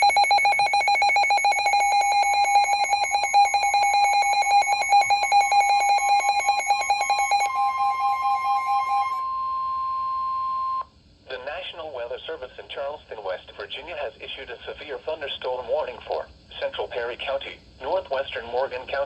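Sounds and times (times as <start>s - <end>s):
steady alarm tone: 0.0s - 10.8s.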